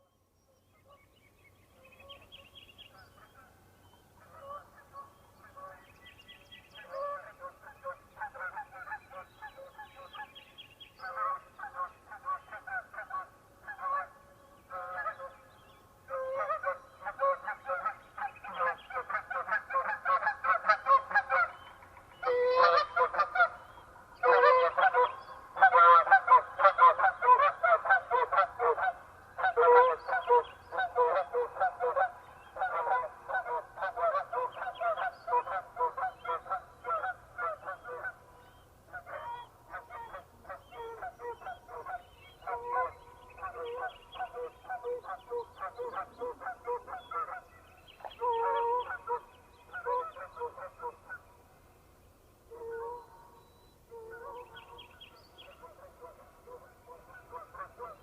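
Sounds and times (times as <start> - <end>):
geese honking in flight: 22.2 - 23.6, 24.2 - 38.2.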